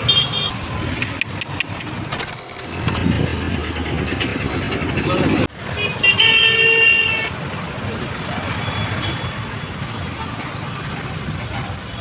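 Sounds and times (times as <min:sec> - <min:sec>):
vehicle engine running: 0:00.0 - 0:05.5
street traffic: 0:00.0 - 0:12.0.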